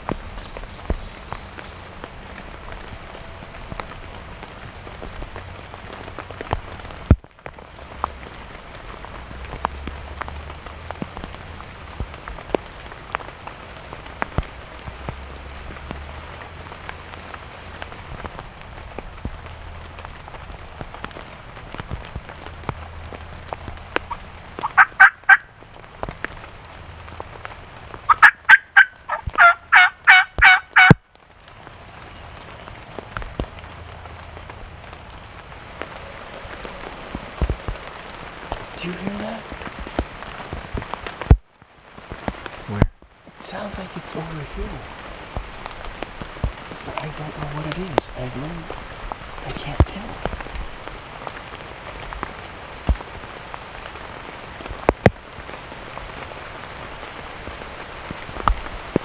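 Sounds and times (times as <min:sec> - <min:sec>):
raindrops ticking: 0:00.0 - 0:59.0
steady rain: 0:00.0 - 0:59.0
turkey gobbling: 0:24.0 - 0:25.5, 0:28.1 - 0:30.9.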